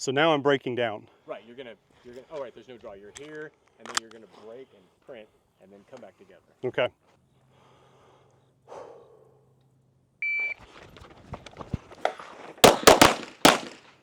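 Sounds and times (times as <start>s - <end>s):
pistol shots: 12.6s - 14.0s.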